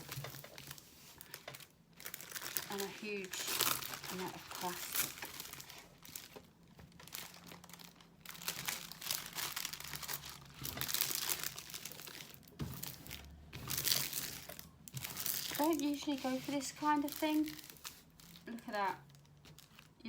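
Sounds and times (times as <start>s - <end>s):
plastic packaging crinkling: 0.0s - 20.0s.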